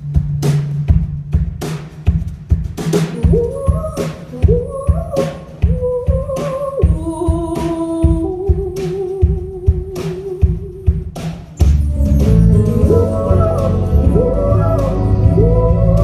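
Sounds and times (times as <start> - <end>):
bass: 0.0 - 3.1, 11.6 - 16.0
drum kit: 0.0 - 16.0
woman singing: 3.1 - 11.2, 11.9 - 16.0.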